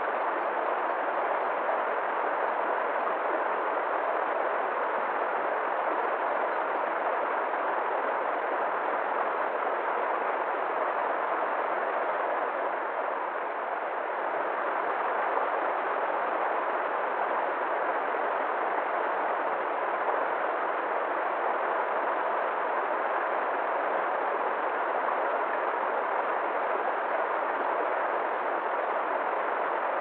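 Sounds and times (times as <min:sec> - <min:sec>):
river water flowing: 0:00.0 - 0:30.0.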